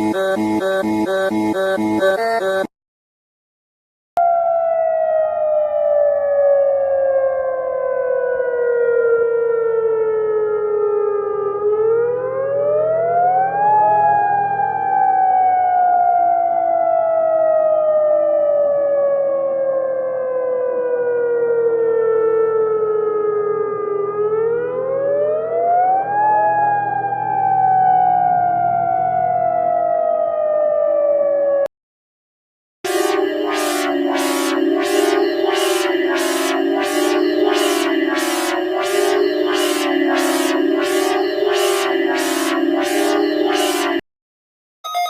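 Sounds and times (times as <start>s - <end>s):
siren sliding in pitch: 0.0s - 2.7s, 4.2s - 31.7s, 32.9s - 44.0s
low steady drone: 32.9s - 44.0s.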